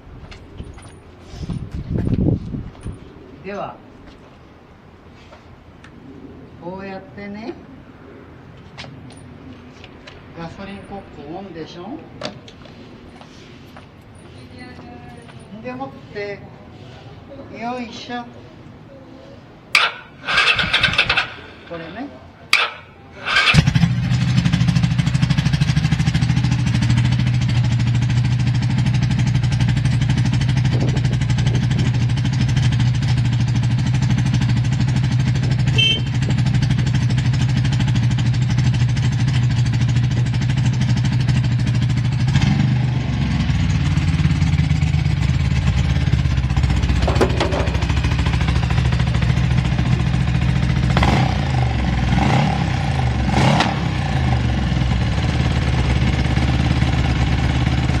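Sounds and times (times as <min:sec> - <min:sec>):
motorcycle engine idling: 0:19.7 - 0:58.0.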